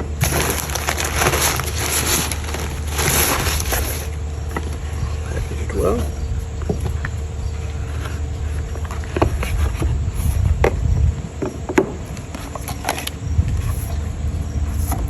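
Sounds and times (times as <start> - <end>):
packaging crinkling and rustling: 0.0 - 4.8
steady low rumble: 0.0 - 15.0.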